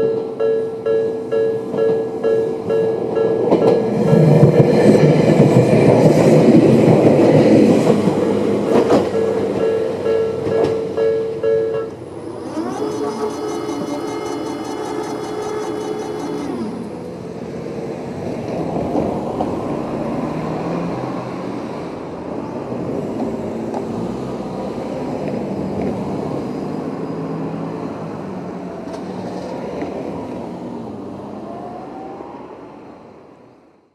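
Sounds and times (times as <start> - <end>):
level crossing warning bell: 0.0 - 4.6, 8.6 - 17.0
vehicle engine noise: 3.5 - 33.6.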